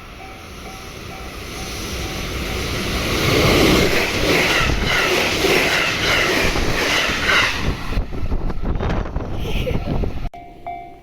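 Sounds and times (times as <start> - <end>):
crossing warning bell ringing: 0.0 - 2.9, 10.4 - 11.0
electric train passing: 0.0 - 9.3.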